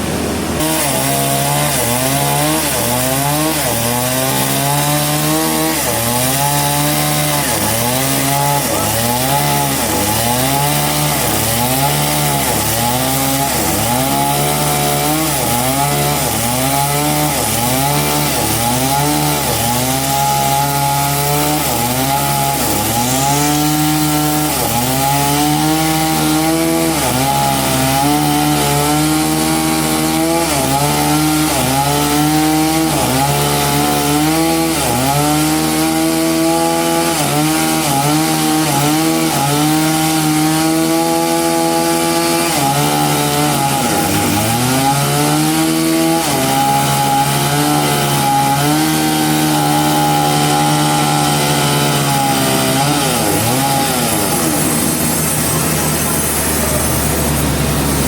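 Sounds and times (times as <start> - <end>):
engine saw cutting log: 0.0 - 58.0.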